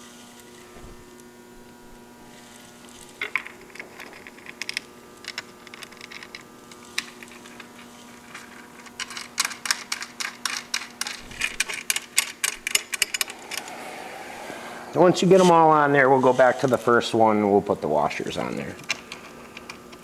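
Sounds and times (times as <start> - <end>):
faint steady hum: 0.0 - 20.0
metal washers and nuts clinking: 8.2 - 13.7.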